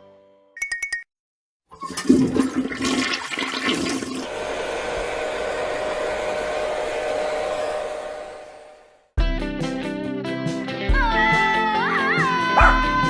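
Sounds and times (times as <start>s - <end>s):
toy toilet flush sound effect: 1.7s - 4.9s.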